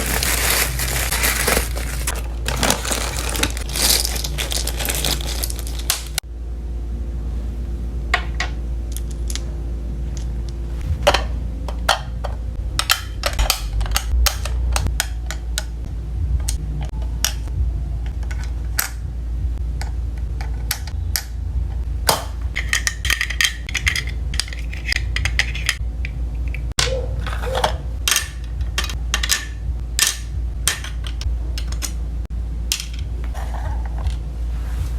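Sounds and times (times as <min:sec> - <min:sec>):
plastic crinkling: 0:00.0 - 0:06.2
low hum: 0:00.0 - 0:34.9.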